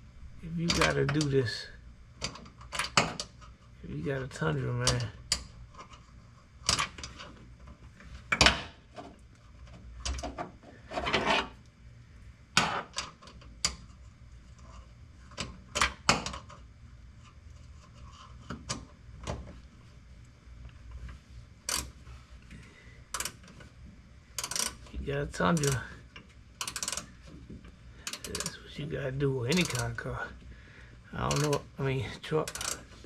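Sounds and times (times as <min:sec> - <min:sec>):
hand tools knocking and scraping: 0:25.4 - 0:25.9, 0:29.6 - 0:30.0, 0:31.2 - 0:31.6.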